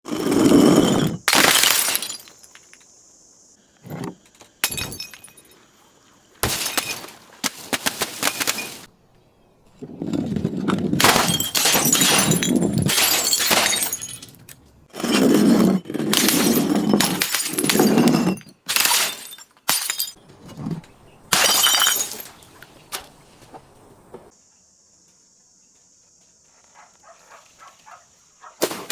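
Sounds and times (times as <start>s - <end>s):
glass bottles being crushed: 1.2s - 2.8s, 4.6s - 5.5s, 6.4s - 8.9s, 11.0s - 20.2s, 21.3s - 22.5s
glass cracking: 6.4s - 8.9s, 11.0s - 14.5s, 16.2s - 20.2s, 21.3s - 22.4s.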